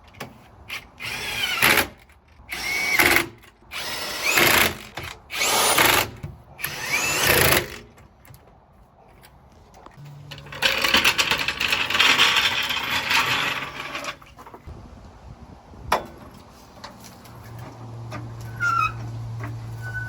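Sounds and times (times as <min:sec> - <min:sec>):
power tool rattling: 0:10.0 - 0:14.3.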